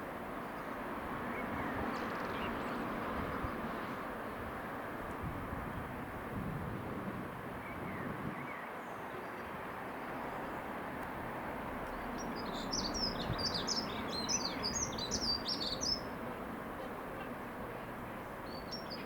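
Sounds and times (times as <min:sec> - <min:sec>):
outdoor background noise: 0:00.0 - 0:19.0
songbird chirping: 0:11.8 - 0:16.2, 0:17.9 - 0:19.0.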